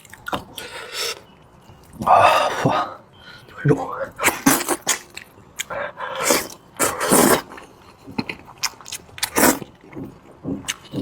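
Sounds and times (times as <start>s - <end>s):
wet chewing and biting: 4.2s - 11.0s.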